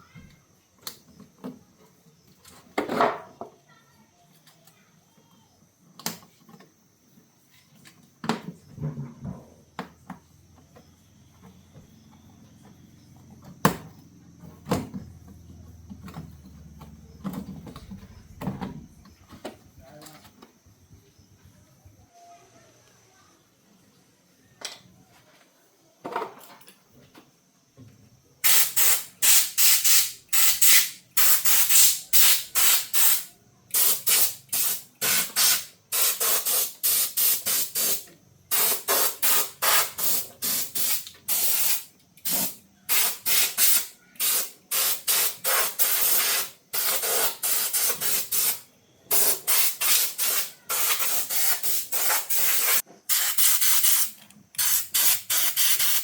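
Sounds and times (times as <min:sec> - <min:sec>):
hissing spray bursts: 0:28.4 - 0:56.0.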